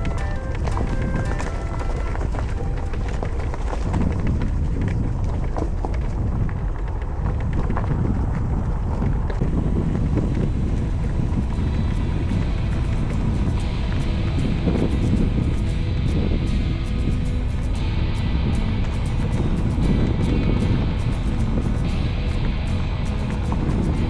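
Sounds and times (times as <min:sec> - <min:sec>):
road noise: 0:00.0 - 0:24.0
wind buffeting microphone: 0:00.0 - 0:24.0.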